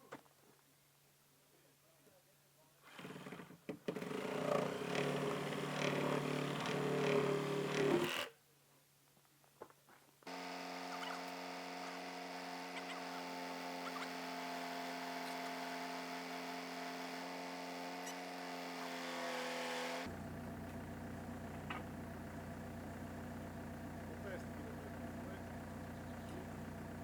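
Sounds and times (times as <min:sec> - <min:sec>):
engine running: 0:04.0 - 0:08.1, 0:10.3 - 0:27.0.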